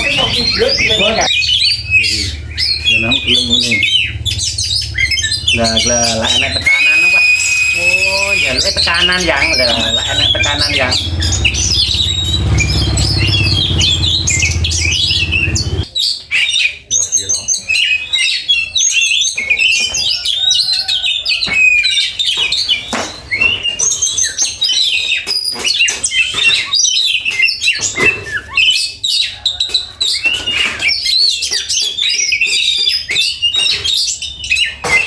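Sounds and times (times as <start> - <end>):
bird singing whistled notes: 0.0 - 20.8.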